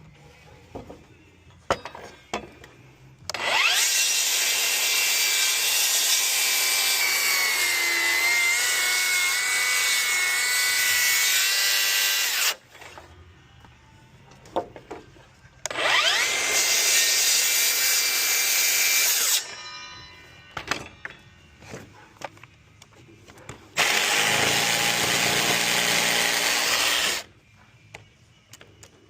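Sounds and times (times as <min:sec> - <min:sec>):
circular saw cutting wood: 0:03.3 - 0:12.7, 0:15.7 - 0:20.0, 0:23.8 - 0:27.3.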